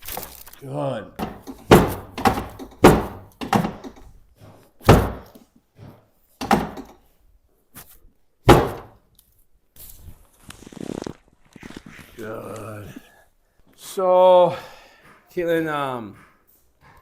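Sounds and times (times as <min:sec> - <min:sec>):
sharp thuds of chiropractic adjustment: 0:01.2 - 0:04.1, 0:04.8 - 0:05.4, 0:06.4 - 0:07.0, 0:08.5 - 0:09.0.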